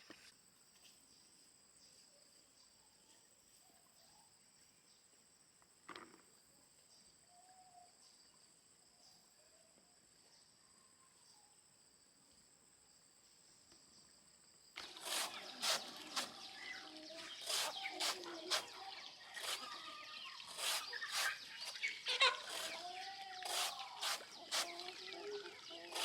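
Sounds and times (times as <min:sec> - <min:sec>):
cricket trilling: 0:14.5 - 0:26.0
chickens clucking: 0:14.8 - 0:26.0.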